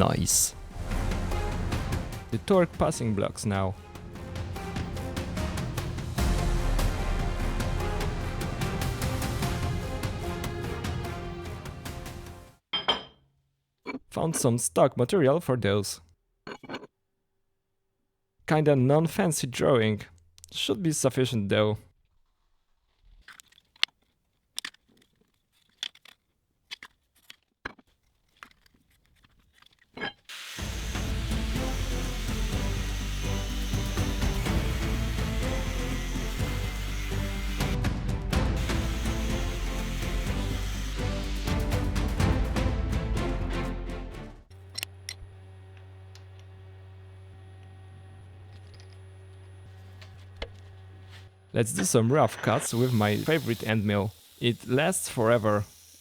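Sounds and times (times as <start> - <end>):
small metal parts clicking: 23.1 - 30.3, 48.5 - 49.0.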